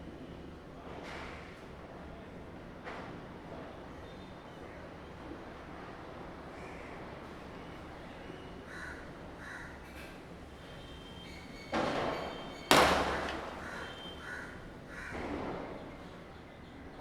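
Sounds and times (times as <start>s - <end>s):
crows cawing: 8.7s - 9.9s, 13.0s - 15.2s
firecracker bangs: 12.0s - 14.3s.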